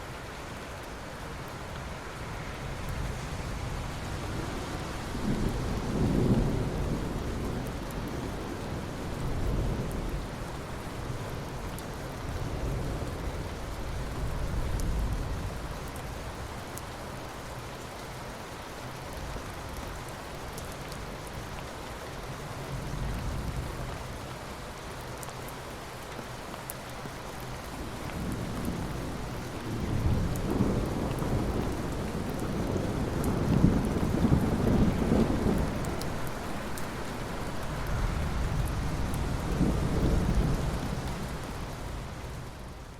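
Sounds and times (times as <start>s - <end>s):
steady rain falling: 0.0s - 42.9s
rolling thunder: 28.2s - 42.0s.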